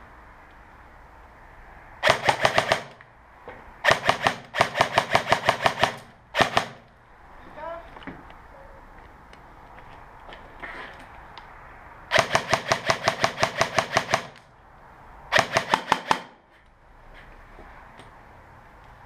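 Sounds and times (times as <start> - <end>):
airsoft gun rapid shots: 2.0 - 3.0, 3.8 - 6.8, 12.1 - 14.4, 15.3 - 16.4.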